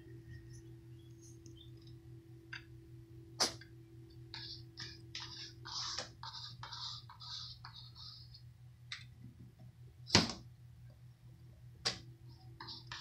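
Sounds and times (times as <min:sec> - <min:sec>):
faint steady hum: 0:00.0 - 0:13.0
small pet sneezing: 0:03.4 - 0:03.6.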